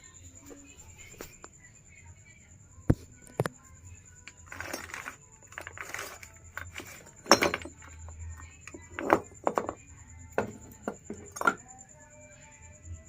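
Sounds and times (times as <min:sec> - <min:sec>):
scraping and rustling: 0:04.3 - 0:08.1
metal parts clinking: 0:04.4 - 0:08.0, 0:10.4 - 0:11.6.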